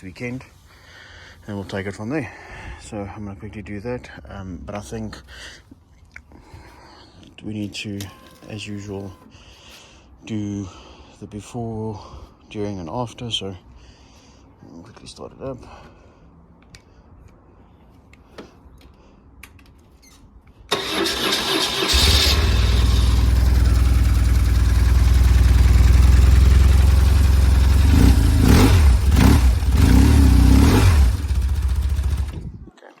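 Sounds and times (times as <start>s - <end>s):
motorcycle engine starting and idling: 20.7s - 32.6s
motorcycle throttle blips: 23.1s - 32.6s.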